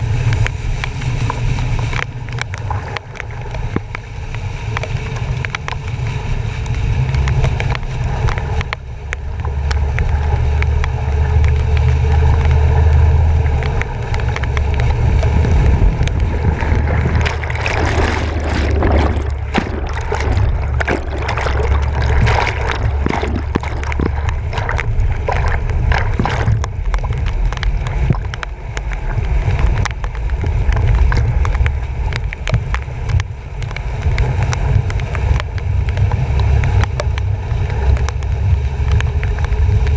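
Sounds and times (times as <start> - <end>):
water splashing against bumper: 0.2 - 39.9
truck engine rumble: 8.9 - 32.2.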